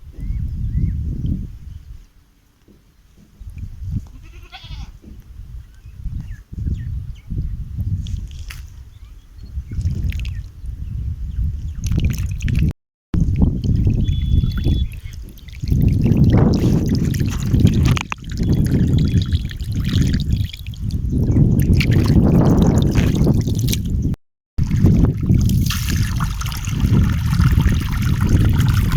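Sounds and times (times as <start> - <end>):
water trickling and splashing: 13.4 - 28.9.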